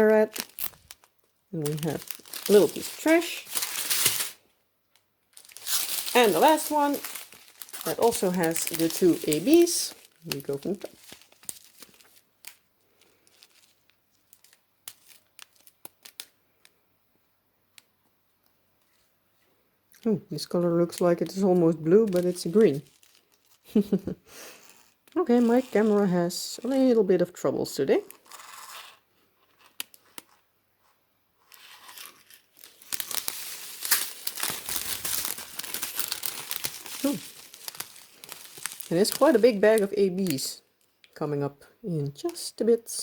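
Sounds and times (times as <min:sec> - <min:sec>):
plastic bags crinkling: 0:00.0 - 0:16.7, 0:20.4 - 0:26.9, 0:31.4 - 0:41.1.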